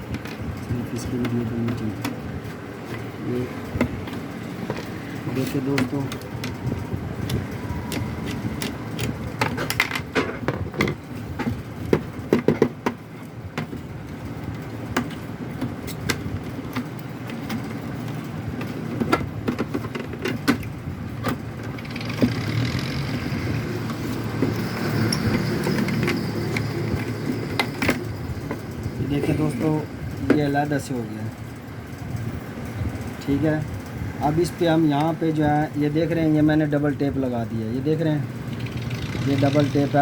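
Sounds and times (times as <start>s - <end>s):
plastic visor clicks and knocks: 7.3s - 13.8s
steady low rumble: 23.0s - 30.3s.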